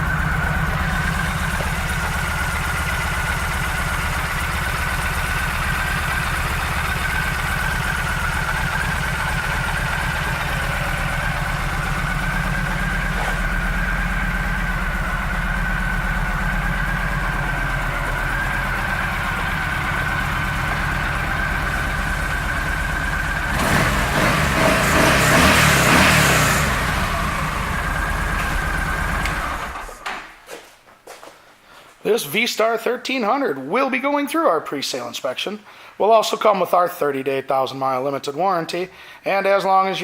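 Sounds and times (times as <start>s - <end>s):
motorcycle engine idling: 0.0s - 30.0s.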